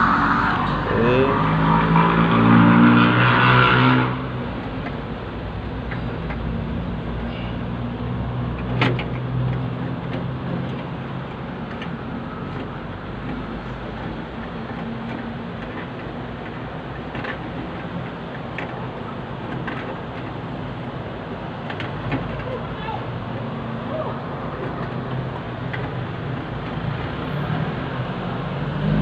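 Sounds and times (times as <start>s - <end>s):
vehicle engine accelerating: 0.0s - 4.8s, 23.6s - 29.0s.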